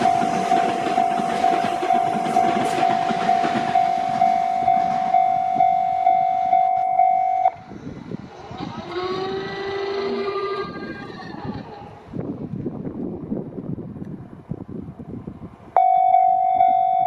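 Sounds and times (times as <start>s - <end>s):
level-crossing alarm pulsing: 0.0s - 7.6s
train rushing past: 0.0s - 15.8s
whine rising in pitch: 3.8s - 11.7s.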